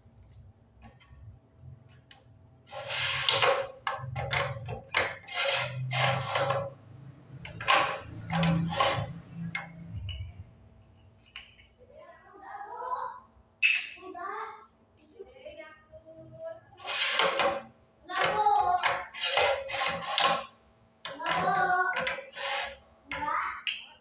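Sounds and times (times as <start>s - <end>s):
sliding rubbing strokes: 2.7s - 3.6s, 4.4s - 6.8s, 7.4s - 9.8s, 16.8s - 17.6s, 18.8s - 20.5s, 21.1s - 22.8s.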